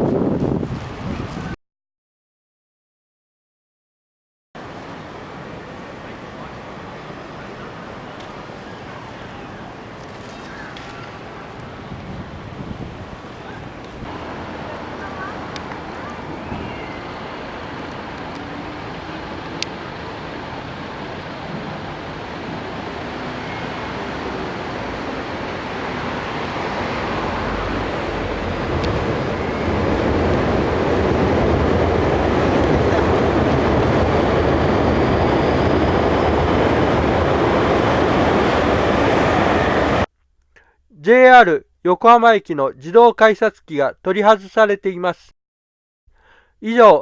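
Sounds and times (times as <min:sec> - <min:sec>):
train rumbling: 0:04.8 - 0:40.1.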